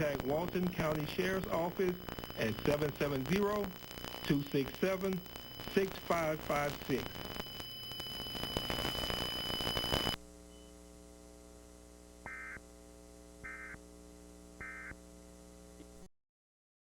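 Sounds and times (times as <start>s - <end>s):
data tone bursts: 0.0s - 10.7s
low electrical hum: 0.0s - 16.1s
static hiss with high tone: 0.0s - 16.1s.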